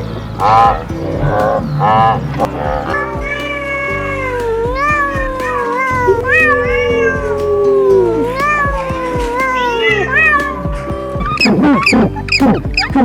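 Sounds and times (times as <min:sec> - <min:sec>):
background music: 0:00.0 - 0:13.0
cat meowing: 0:04.8 - 0:07.4, 0:08.2 - 0:12.1.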